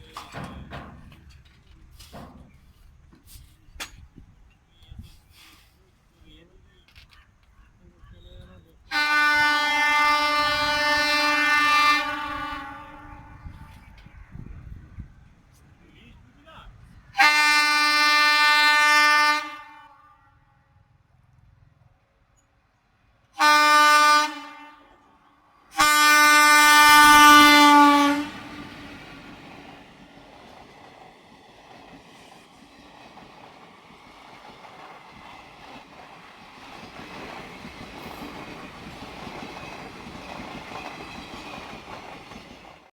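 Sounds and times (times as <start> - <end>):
train running noise: 0.0 - 42.9
train horn blasts: 8.9 - 14.0, 17.1 - 20.5, 23.4 - 28.7.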